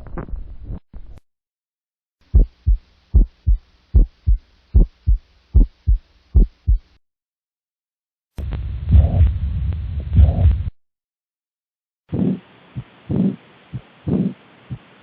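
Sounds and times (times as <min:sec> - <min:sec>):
heartbeat lub-dub: 0:02.2 - 0:07.0, 0:08.4 - 0:10.7.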